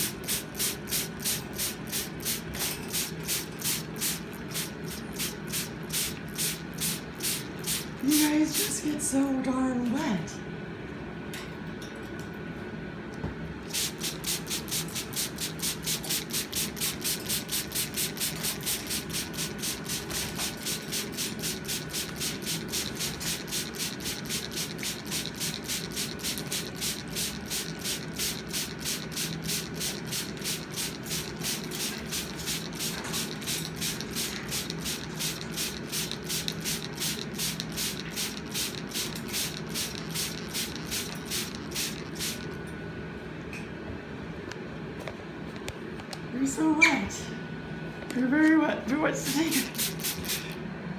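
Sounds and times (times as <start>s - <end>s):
spray bottle squirting water: 0.0s - 8.8s, 13.7s - 42.5s, 49.3s - 50.6s.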